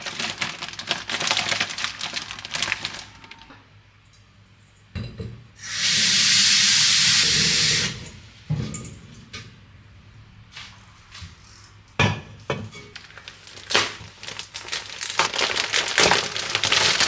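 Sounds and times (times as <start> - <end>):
loud steady hissing: 5.6 - 8.3.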